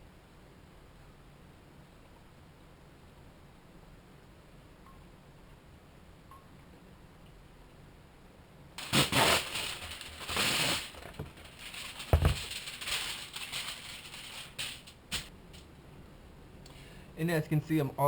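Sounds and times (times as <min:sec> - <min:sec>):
foil crinkling: 0:08.8 - 0:15.3.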